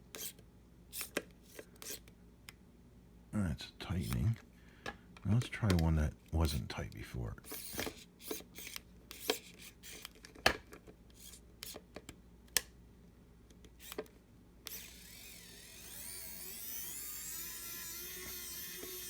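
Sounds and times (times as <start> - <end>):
electric screwdriver motor whirring: 0.2 - 0.4, 1.0 - 2.0, 4.0 - 4.3, 7.4 - 10.1, 13.8 - 19.0.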